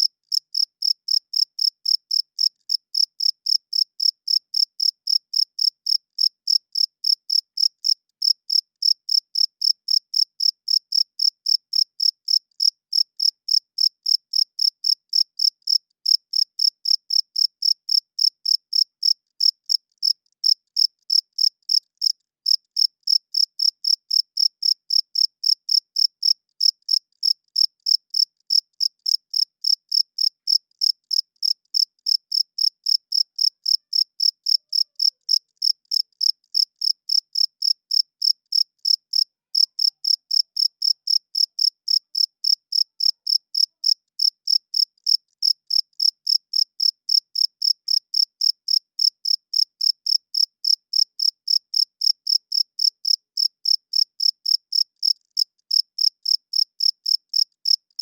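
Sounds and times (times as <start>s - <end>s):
cricket chirping: 0.3s - 58.0s.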